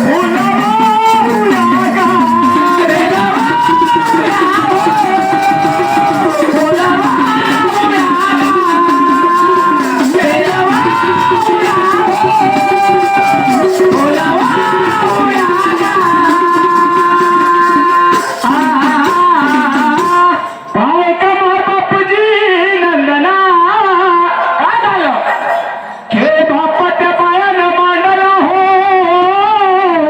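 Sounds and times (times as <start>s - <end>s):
instrumental accompaniment: 0.0s - 20.9s
rhythmic percussion: 0.0s - 22.8s, 23.5s - 28.7s
person singing devotional song: 0.0s - 30.0s.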